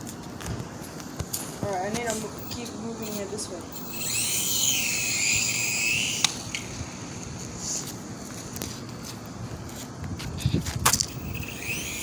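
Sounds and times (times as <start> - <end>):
toy helicopter motors whining: 2.0 - 8.6, 10.4 - 12.0
sharp click: 2.4 - 6.8, 10.8 - 12.0.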